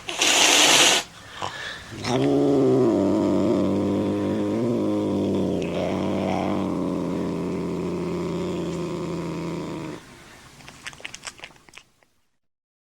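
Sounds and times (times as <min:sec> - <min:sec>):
cat growling yowl: 0:00.1 - 0:10.1.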